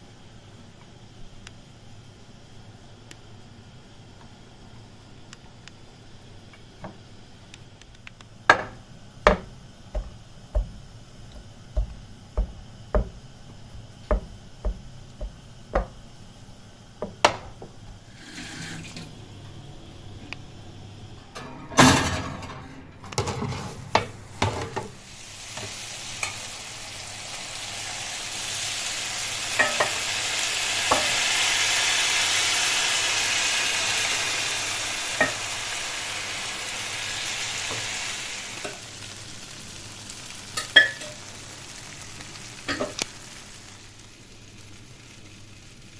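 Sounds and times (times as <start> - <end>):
dessert sizzling in pan: 0.0 - 21.1, 23.2 - 45.9
kitchen knocks and taps: 8.5 - 16.0, 17.0 - 17.9.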